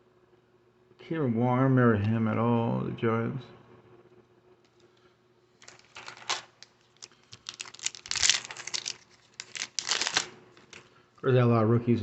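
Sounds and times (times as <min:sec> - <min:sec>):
trading cards flipped through: 0:05.6 - 0:10.9.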